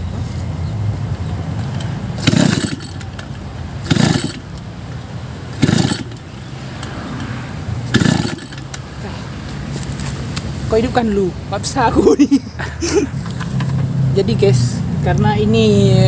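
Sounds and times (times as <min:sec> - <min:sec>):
engine hand cranking rattle: 0:01.6 - 0:09.1.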